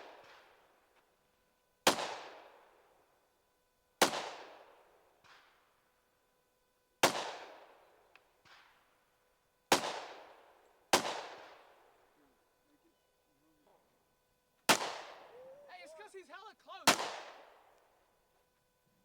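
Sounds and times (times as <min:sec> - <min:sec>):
loud gunshots echoing: 0:11.0 - 0:11.6, 0:14.7 - 0:17.7
fainter gunshots: 0:14.7 - 0:17.6.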